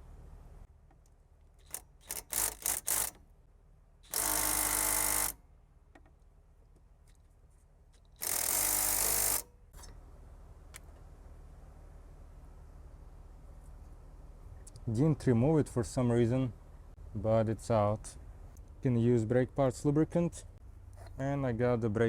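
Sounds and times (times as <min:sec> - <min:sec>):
impact wrench hammering: 0:08.2 - 0:09.4.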